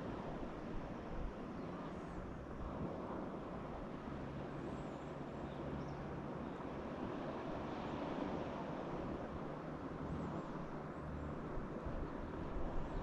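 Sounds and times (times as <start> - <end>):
faint engine hum: 0.0 - 13.0.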